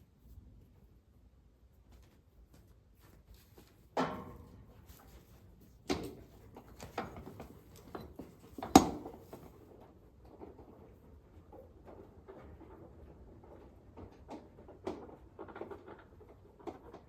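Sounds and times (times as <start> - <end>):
tools knocking and clattering: 4.0 - 9.5.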